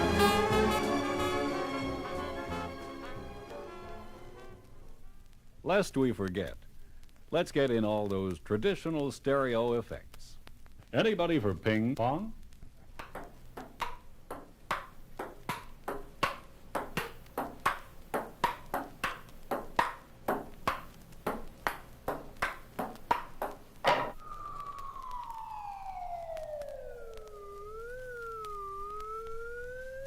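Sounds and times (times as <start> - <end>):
table tennis ball clicks: 13.0 - 24.2
siren-like wail falling in pitch: 23.9 - 30.0.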